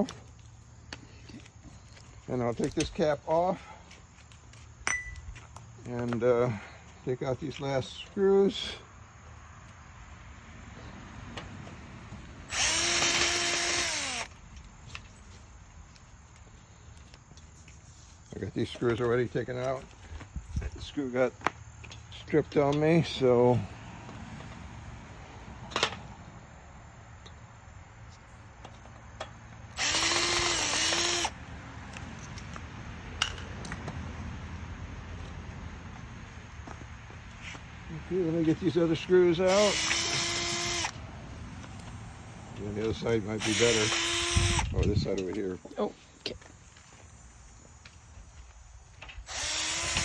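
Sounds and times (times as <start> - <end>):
power drill running: 12.5 - 14.3, 29.7 - 31.4, 39.5 - 41.0, 43.4 - 44.7, 49.3 - 50.0.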